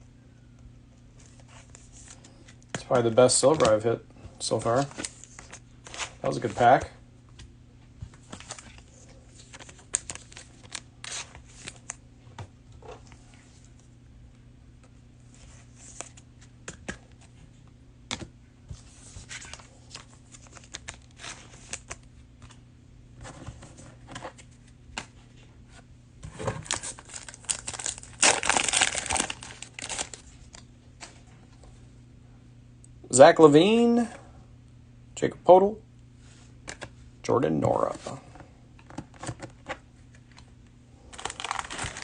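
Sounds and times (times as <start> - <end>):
cards clicking and rustling: 1.3 - 3.9, 26.6 - 30.2, 41.1 - 42.0
plastic wrapper crinkling and tearing: 8.4 - 12.0, 26.6 - 30.6, 41.1 - 42.0.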